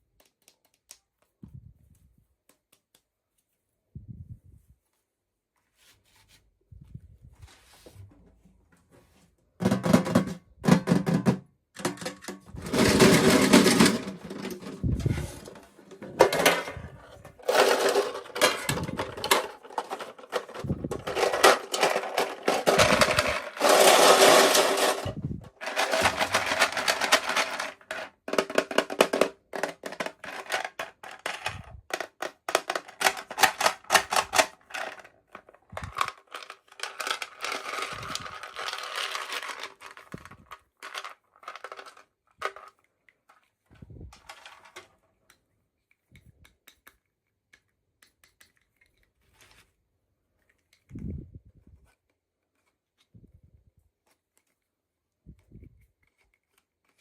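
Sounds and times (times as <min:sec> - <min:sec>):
small clicks and taps: 0:00.1 - 0:01.4, 0:45.2 - 0:49.1.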